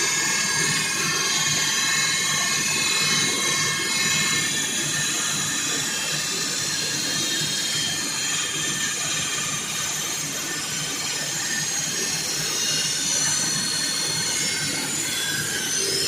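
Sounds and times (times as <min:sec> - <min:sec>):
high whine: 0:00.0 - 0:16.0
saw blade grinding: 0:00.0 - 0:16.0.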